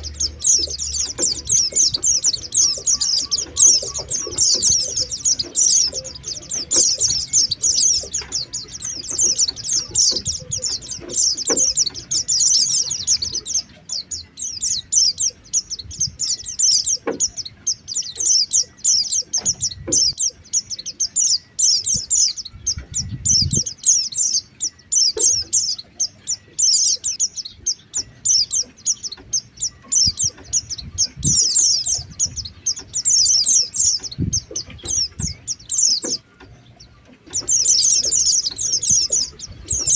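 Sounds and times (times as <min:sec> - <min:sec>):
white-eye bird twittering: 0:00.0 - 0:39.9
faint low thumps: 0:29.1 - 0:39.9.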